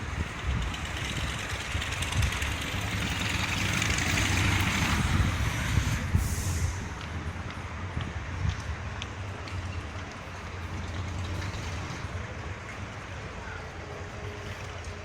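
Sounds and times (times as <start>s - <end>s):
streetcar passing: 0.0s - 15.0s
wind buffeting microphone: 0.0s - 15.0s
short hiss: 6.1s - 6.9s.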